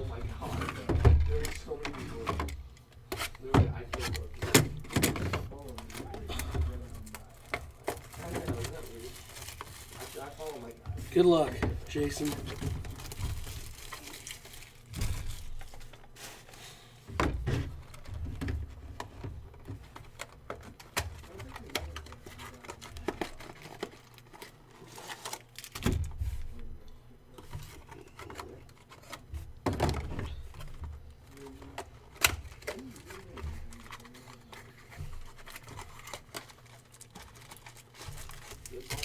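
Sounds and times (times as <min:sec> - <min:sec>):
packaging rustling: 0:00.0 - 0:16.9, 0:17.6 - 0:26.5, 0:27.3 - 0:39.0.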